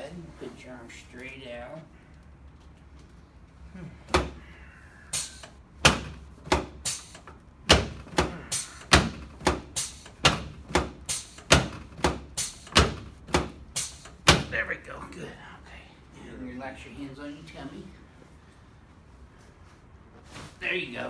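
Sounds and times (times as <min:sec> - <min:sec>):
sharp knocks: 0:05.1 - 0:14.6.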